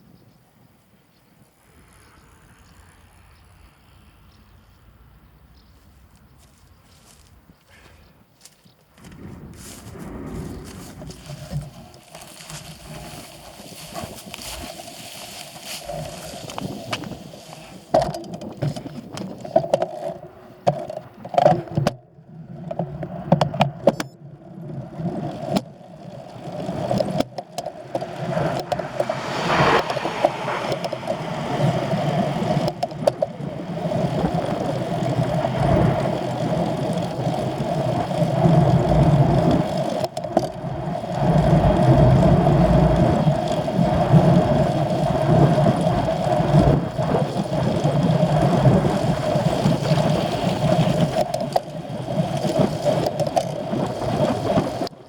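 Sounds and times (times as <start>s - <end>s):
engine droning: 0.8s - 55.0s
knocks and clicks: 22.7s - 24.2s, 26.3s - 31.7s.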